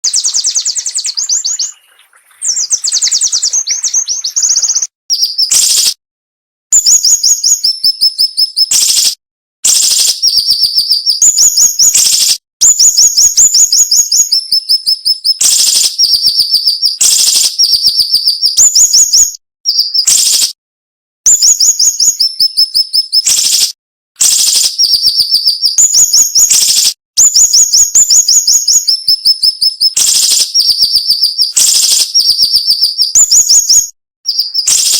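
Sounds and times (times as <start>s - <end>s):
bird singing rapid high notes: 0.0s - 6.0s, 24.4s - 34.9s.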